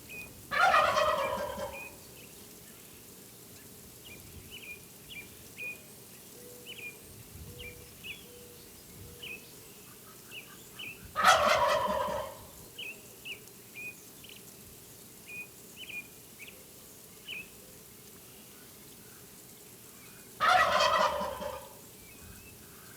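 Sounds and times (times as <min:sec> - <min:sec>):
turkey gobbling: 0:00.5 - 0:02.0, 0:11.2 - 0:12.5, 0:20.4 - 0:21.8.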